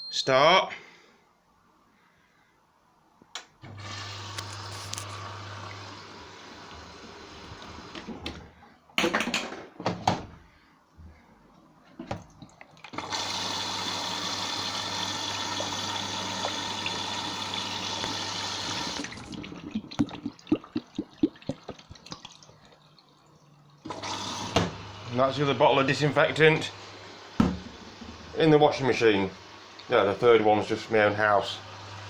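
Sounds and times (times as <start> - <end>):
liquid rushing into washing machine: 3.6 - 8.5, 12.0 - 22.7, 23.8 - 32.0.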